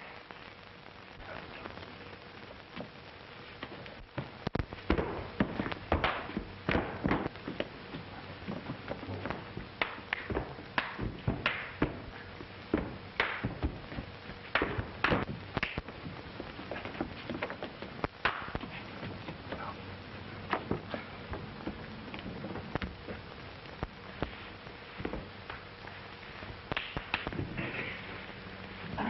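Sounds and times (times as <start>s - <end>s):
film soundtrack hiss: 0.0s - 29.0s
sharp knocks and thuds: 4.2s - 12.1s, 12.7s - 15.9s.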